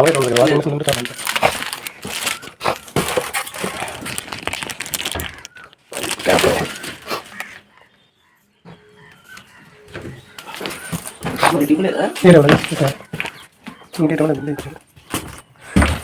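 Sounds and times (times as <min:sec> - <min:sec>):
packaging crinkling: 0:00.0 - 0:07.6.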